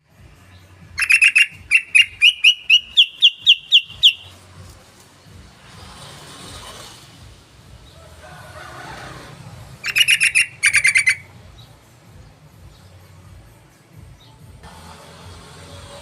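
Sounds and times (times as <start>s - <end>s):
bird calling rapid notes: 0.9s - 4.4s, 9.8s - 11.3s.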